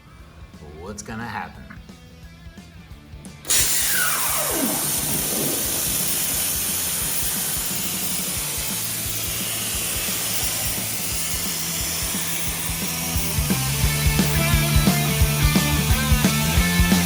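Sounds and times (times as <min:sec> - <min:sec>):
plasma cutter hissing: 0:03.5 - 0:17.0.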